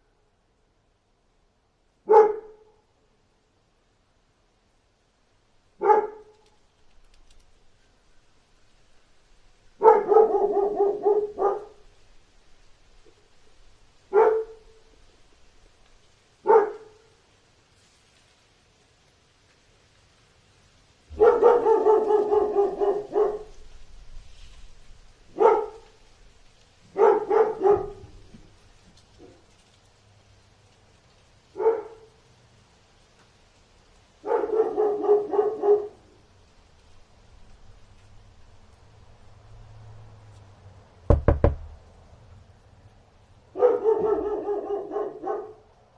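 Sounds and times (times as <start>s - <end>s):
dog barking: 2.0s - 2.8s, 5.8s - 6.4s, 9.8s - 11.9s, 14.1s - 14.9s, 16.4s - 17.2s, 21.1s - 23.7s, 25.3s - 26.0s, 26.9s - 28.3s, 31.5s - 32.2s, 34.2s - 36.2s, 43.5s - 45.7s.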